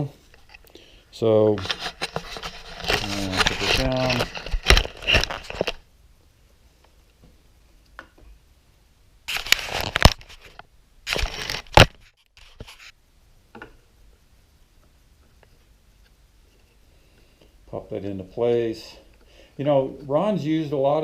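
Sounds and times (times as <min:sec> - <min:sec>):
rustling and scraping of parts: 0:00.0 - 0:05.9, 0:09.3 - 0:13.9, 0:14.8 - 0:20.7.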